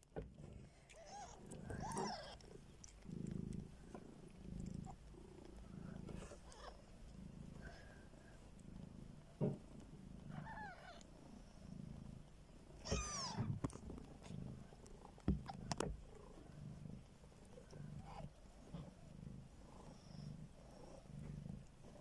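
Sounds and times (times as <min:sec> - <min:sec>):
cat purring: 0:00.2 - 0:22.0
kittens mewing: 0:00.9 - 0:02.5, 0:06.1 - 0:06.8, 0:12.8 - 0:13.5.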